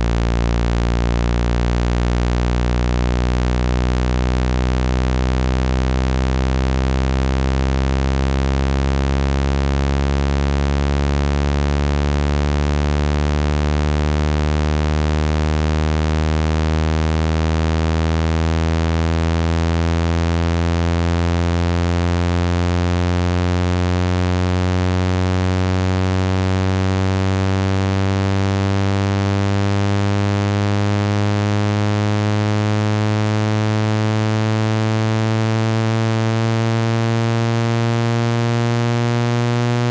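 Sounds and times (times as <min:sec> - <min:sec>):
low buzzing synthesized tone: 0:00.0 - 0:39.9.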